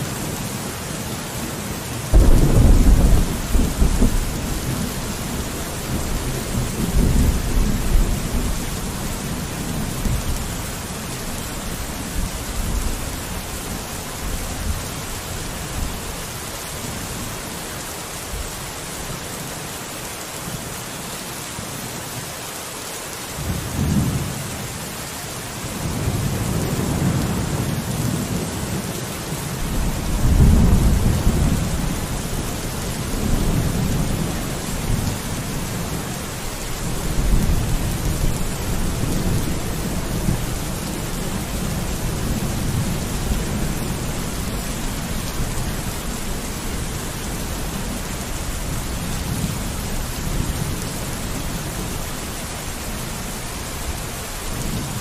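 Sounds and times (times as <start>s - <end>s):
steady rain falling: 0.0s - 55.0s
distant thunder rumbling: 2.1s - 10.4s, 29.6s - 44.9s.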